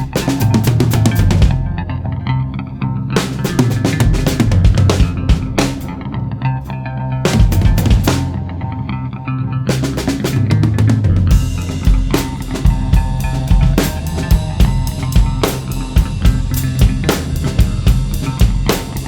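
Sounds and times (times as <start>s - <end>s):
drum kit beat: 0.0s - 1.7s, 3.2s - 6.0s, 7.3s - 8.4s, 9.8s - 19.0s
bass drum kicks: 4.0s - 5.9s, 7.4s - 8.3s, 11.2s - 18.7s.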